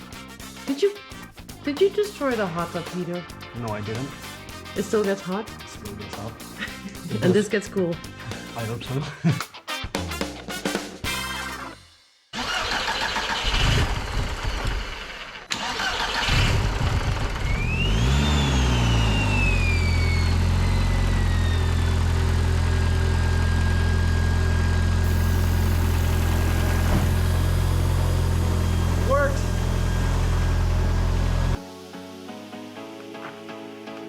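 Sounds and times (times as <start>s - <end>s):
car engine starting and idling: 12.4s - 31.6s.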